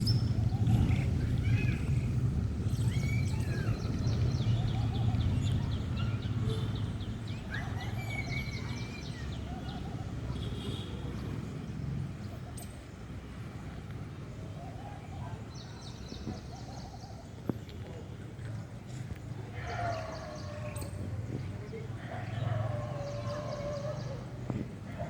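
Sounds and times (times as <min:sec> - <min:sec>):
small birds chirping: 0:00.0 - 0:25.0.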